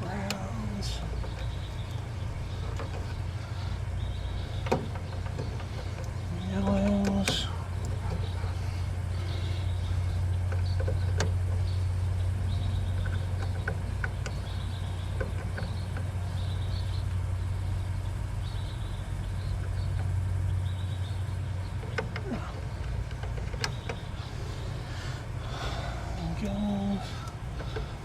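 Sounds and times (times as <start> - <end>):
low machine hum: 0.0 - 28.0
small clicks and taps: 1.1 - 8.6, 9.2 - 11.8, 12.5 - 17.2, 21.6 - 24.4.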